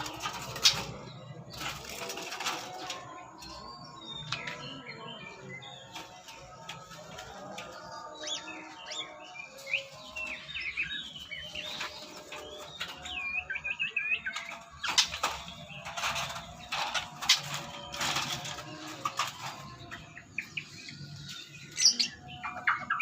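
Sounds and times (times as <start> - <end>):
birds whistling calls: 8.1 - 23.0.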